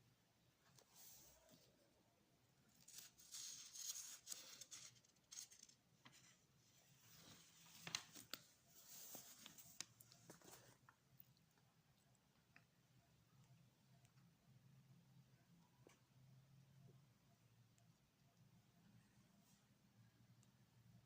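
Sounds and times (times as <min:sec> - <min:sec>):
faint rustling: 0:02.7 - 0:11.0.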